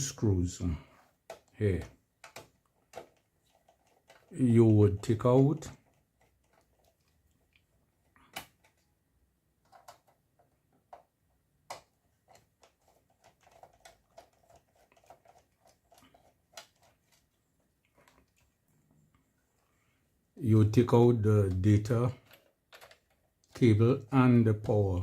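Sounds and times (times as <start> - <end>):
clicks and taps handling parts: 1.0 - 4.4, 5.0 - 8.9, 9.6 - 18.5, 21.5 - 23.7.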